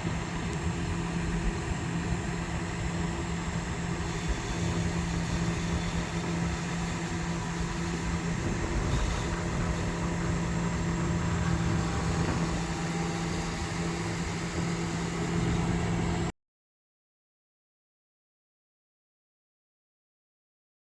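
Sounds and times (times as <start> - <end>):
tractor engine running: 0.0 - 16.3.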